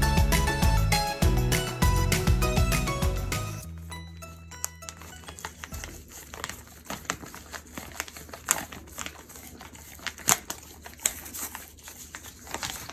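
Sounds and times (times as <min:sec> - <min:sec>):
dog crunching dry food: 0:04.9 - 0:12.9.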